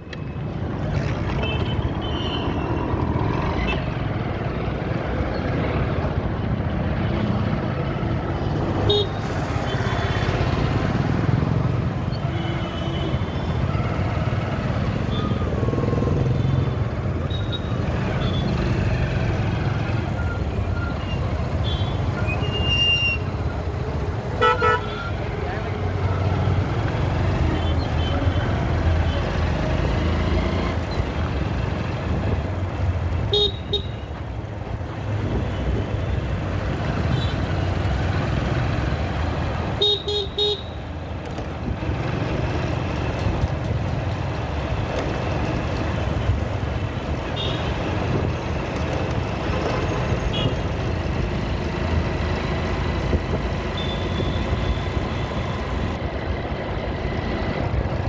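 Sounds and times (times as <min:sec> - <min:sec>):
vehicle horns honking: 0:24.4 - 0:25.1, 0:53.8 - 0:54.8.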